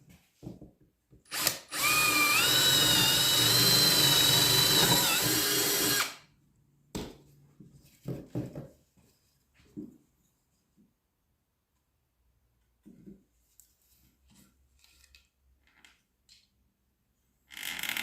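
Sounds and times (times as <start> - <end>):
drill bit boring plywood: 1.3 - 6.2
drill press motor whining: 1.3 - 6.2.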